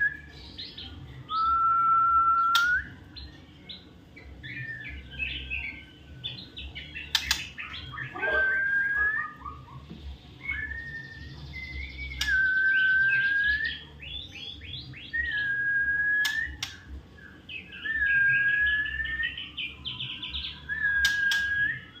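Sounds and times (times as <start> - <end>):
bird whistling song: 0.0 - 22.0
bird chattering notes: 7.0 - 9.9.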